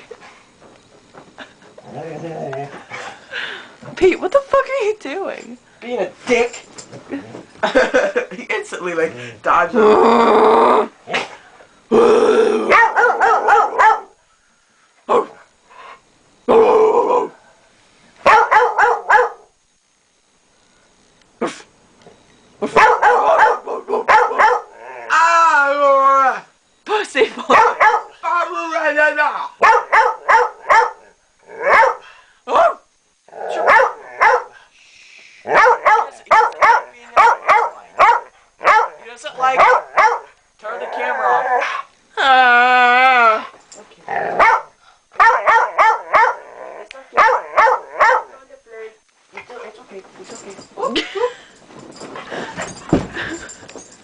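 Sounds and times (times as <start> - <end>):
dog growling and barking: 1.8 - 3.1, 9.8 - 14.2, 18.2 - 19.5, 22.6 - 25.2, 27.5 - 28.2, 29.6 - 32.0, 33.3 - 34.6, 35.4 - 41.9, 44.1 - 48.3.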